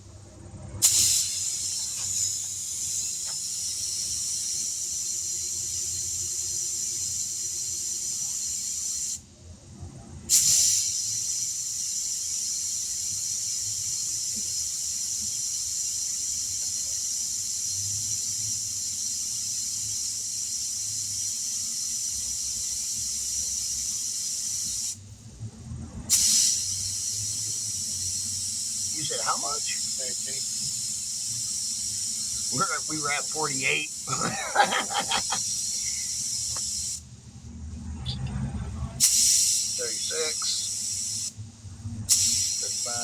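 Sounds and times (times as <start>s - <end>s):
compressed air hissing: 0.8s - 9.3s, 10.3s - 25.2s, 26.1s - 37.1s, 39.0s - 43.0s.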